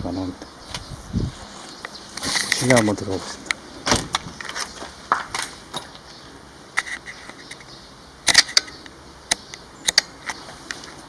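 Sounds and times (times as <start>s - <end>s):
footsteps walking: 0.7s - 6.0s.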